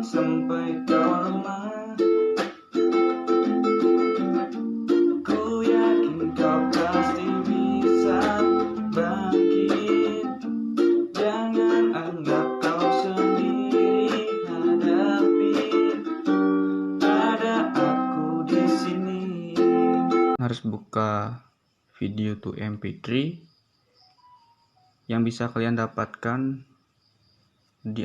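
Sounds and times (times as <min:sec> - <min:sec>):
plucked string music: 0:00.0 - 0:20.4.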